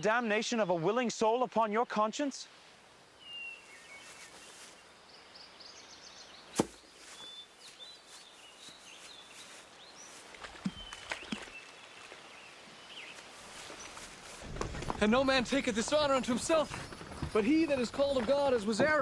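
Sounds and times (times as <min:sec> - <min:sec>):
faint bird chirps: 0:03.2 - 0:14.1.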